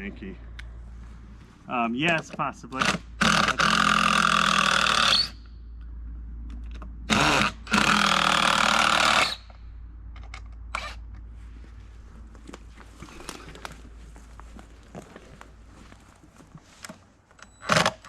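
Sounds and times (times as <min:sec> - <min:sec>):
chainsaw revving in bursts: 0:02.8 - 0:05.4, 0:07.1 - 0:09.4.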